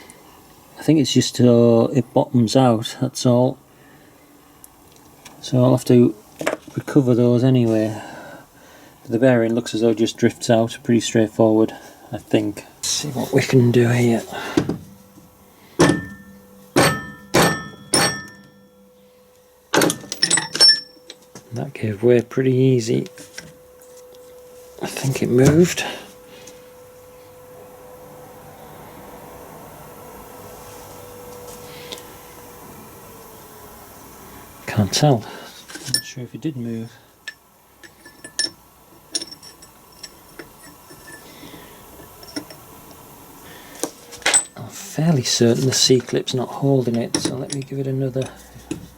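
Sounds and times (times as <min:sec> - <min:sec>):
hammer striking metal drift: 0:15.8 - 0:18.9
metal tools clinking: 0:19.8 - 0:21.2, 0:35.7 - 0:36.2, 0:37.2 - 0:42.6, 0:44.2 - 0:44.6, 0:45.7 - 0:48.9.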